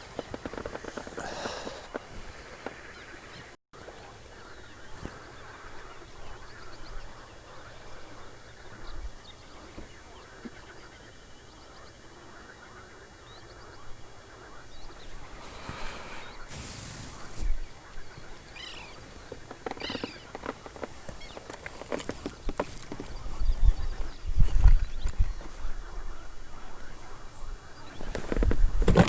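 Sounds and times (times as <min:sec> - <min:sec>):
outdoor hiss: 0:00.0 - 0:06.0, 0:15.1 - 0:23.3
birds chirping: 0:00.0 - 0:29.0.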